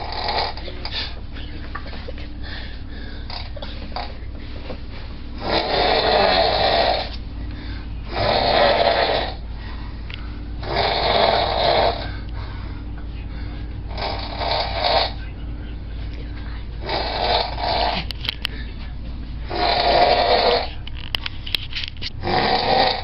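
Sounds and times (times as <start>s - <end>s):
person snoring: 0.0s - 0.6s, 5.4s - 7.2s, 8.1s - 9.4s, 10.6s - 12.2s, 13.9s - 15.2s, 16.8s - 18.1s, 19.5s - 20.7s, 22.2s - 23.0s
quiet breathing: 0.5s - 5.5s, 6.1s - 10.6s, 11.4s - 19.6s.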